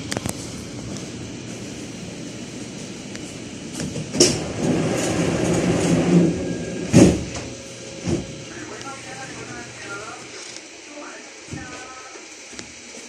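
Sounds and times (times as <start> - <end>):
train rumble from inside: 0.0 - 10.3.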